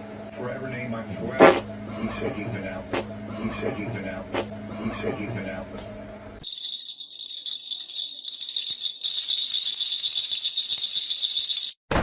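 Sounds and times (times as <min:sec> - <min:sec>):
rapid high-pitched rattle: 0:06.4 - 0:11.8.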